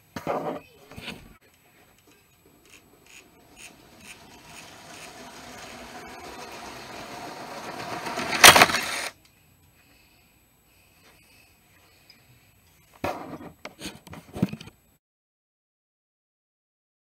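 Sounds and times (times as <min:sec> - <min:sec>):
toy train rattling on plastic track: 0:02.0 - 0:09.1
loud crash: 0:03.4 - 0:09.1.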